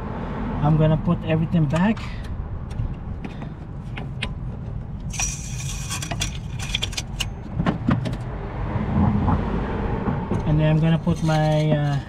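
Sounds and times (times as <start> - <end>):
steady low rumble: 0.0 - 7.6, 8.2 - 12.0
metal tools clinking: 5.1 - 7.5, 10.4 - 12.0.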